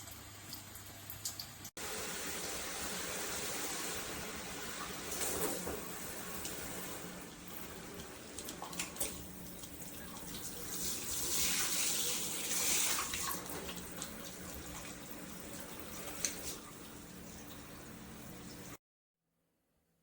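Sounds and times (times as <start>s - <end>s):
water spraying from shower head: 1.8s - 9.2s, 10.4s - 16.8s.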